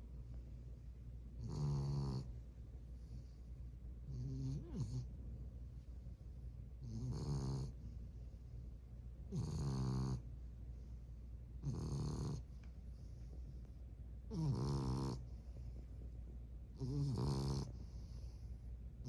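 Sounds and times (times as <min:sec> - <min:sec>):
puppy snoring: 0:01.4 - 0:02.4, 0:04.0 - 0:05.1, 0:06.8 - 0:07.9, 0:09.3 - 0:10.3, 0:11.6 - 0:12.6, 0:14.3 - 0:15.4, 0:16.7 - 0:18.4.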